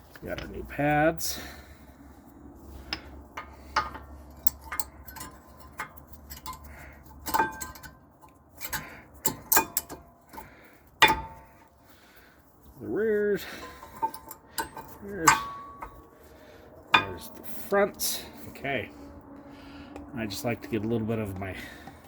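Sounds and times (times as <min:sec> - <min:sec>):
brake pads and clips clinking: 0:00.0 - 0:01.6, 0:02.7 - 0:11.8, 0:13.4 - 0:18.8.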